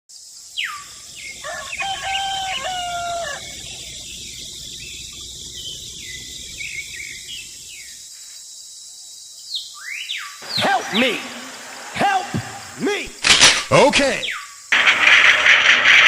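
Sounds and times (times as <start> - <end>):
steady high hiss: 0.3 - 9.1, 10.4 - 14.9
rooster crowing: 1.2 - 4.0.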